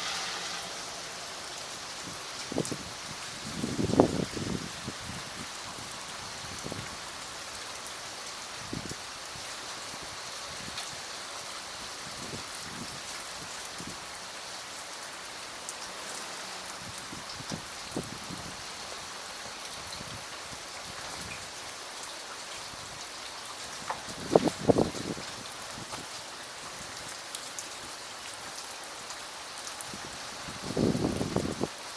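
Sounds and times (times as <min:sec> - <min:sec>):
rain falling: 0:00.0 - 0:31.9.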